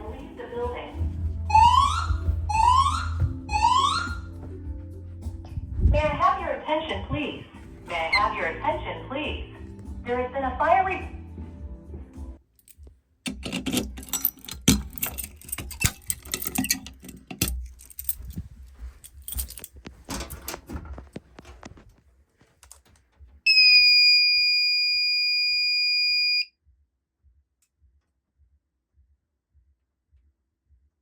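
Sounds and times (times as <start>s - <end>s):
fire alarm electronic tone: 1.5s - 4.3s, 23.5s - 26.5s
irregular rattling and clicking: 12.6s - 23.4s.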